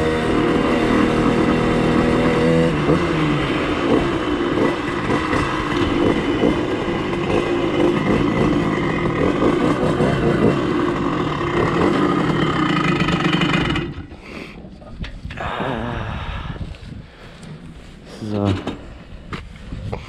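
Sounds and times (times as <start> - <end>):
motorbike engine running: 0.0 - 14.2.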